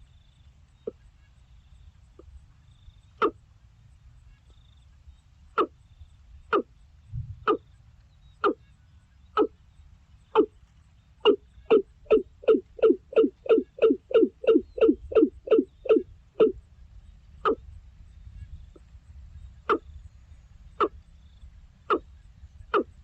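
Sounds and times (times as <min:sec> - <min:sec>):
bird calling gulping notes: 0:05.5 - 0:05.8, 0:10.3 - 0:10.6, 0:11.2 - 0:16.6, 0:21.9 - 0:23.0.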